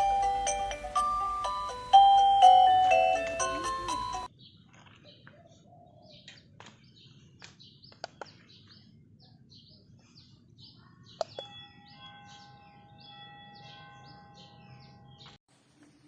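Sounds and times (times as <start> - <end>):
doorbell chime: 0.0 - 4.3, 11.4 - 15.4
faint birds chirping: 0.0 - 16.0.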